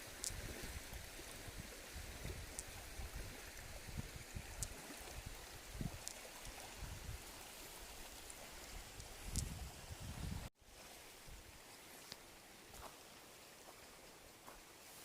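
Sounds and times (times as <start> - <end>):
wind gusting against microphone: 0.0 - 10.5
faint steady hiss: 0.0 - 15.0.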